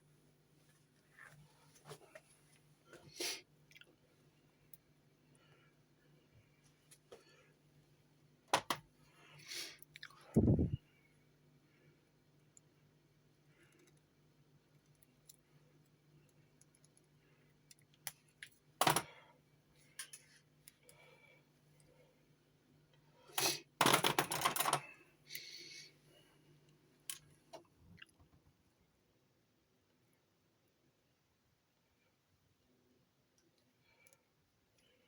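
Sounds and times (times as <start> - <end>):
faint low hum: 0.0 - 23.4.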